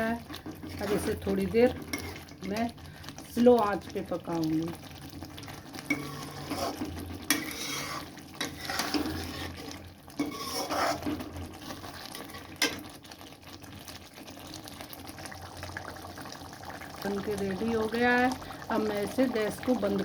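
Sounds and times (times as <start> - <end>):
spoon scraping through thick gravy: 1.7 - 2.4, 5.8 - 12.9.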